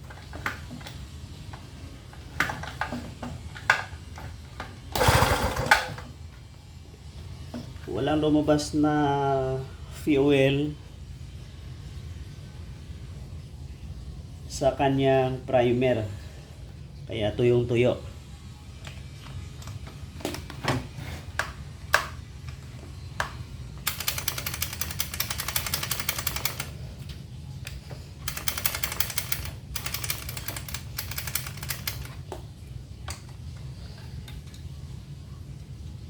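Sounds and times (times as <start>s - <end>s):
small engine being cranked: 5.0s - 5.9s, 23.8s - 26.7s, 28.2s - 32.2s.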